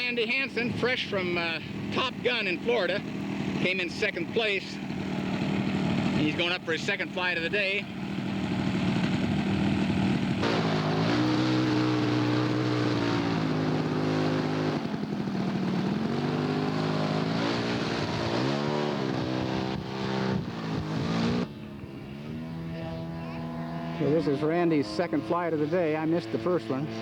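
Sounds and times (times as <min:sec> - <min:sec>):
model airplane engine running: 0:00.0 - 0:27.0.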